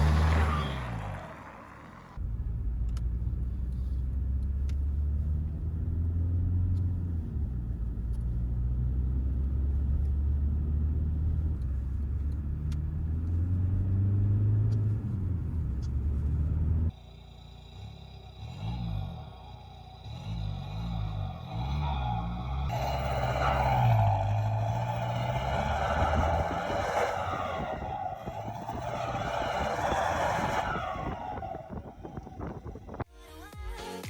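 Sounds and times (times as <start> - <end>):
diesel exhaust drone: 0.0 - 4.0, 14.9 - 33.0.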